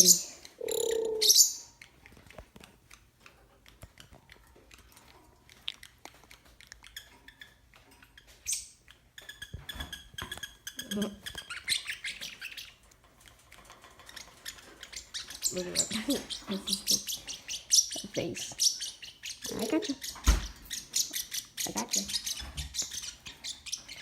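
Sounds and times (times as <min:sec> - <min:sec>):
bird calling: 0:00.0 - 0:01.8.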